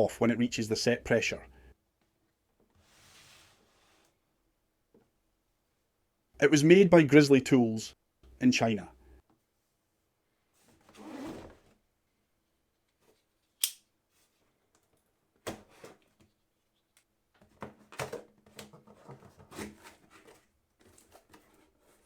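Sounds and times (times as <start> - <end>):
cardboard packaging rustling: 17.5 - 22.0.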